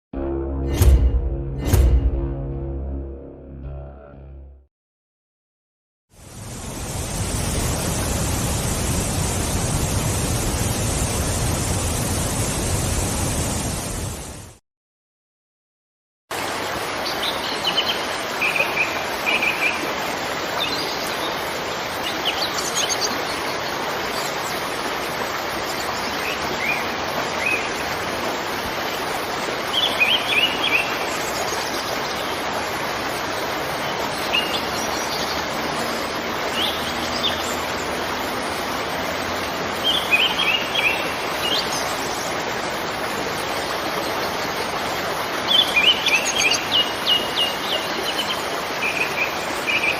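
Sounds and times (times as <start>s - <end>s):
waterfall rushing: 6.2s - 14.6s, 16.3s - 49.9s
birds chirping: 39.8s - 42.4s.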